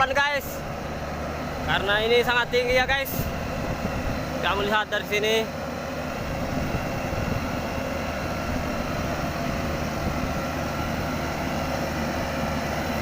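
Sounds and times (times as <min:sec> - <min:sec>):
diesel engine running steadily: 0:00.0 - 0:13.0.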